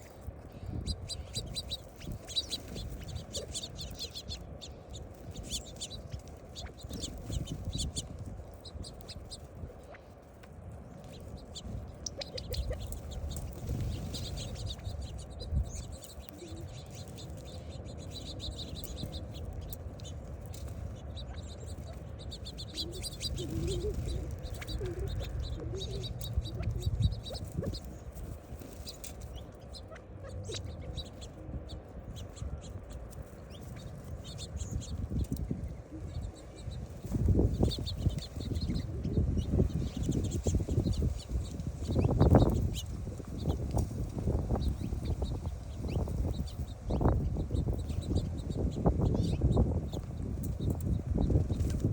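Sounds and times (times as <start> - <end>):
small birds chirping: 0.0 - 51.9
pigeon cooing: 22.8 - 27.8.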